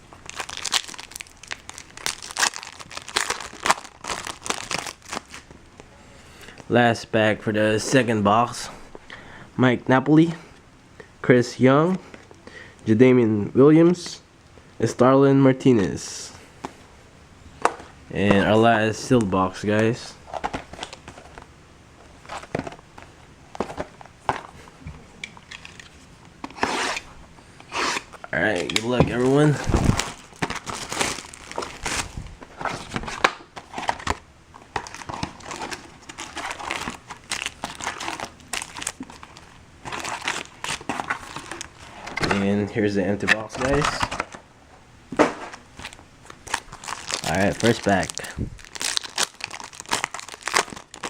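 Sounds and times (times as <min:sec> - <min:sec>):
foil wrapper crinkling: 0:00.2 - 0:05.5, 0:28.5 - 0:32.2, 0:32.8 - 0:41.9, 0:45.8 - 0:51.0.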